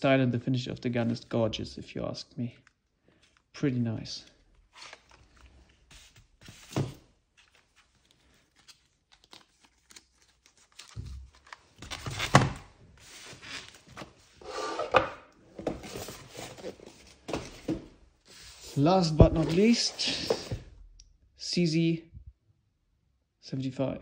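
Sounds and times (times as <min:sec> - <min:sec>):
packaging rustling and scraping: 0:04.6 - 0:15.0, 0:15.6 - 0:20.6.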